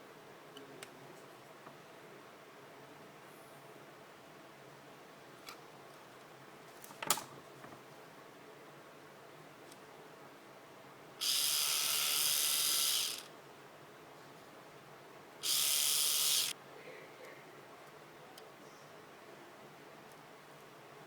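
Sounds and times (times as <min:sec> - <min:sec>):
electric toothbrush buzzing: 0:11.2 - 0:13.3, 0:15.4 - 0:16.6.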